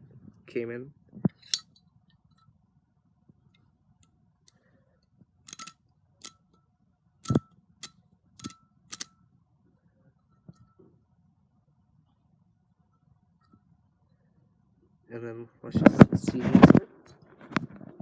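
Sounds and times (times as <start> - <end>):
metal lighter clicking: 7.2 - 9.1.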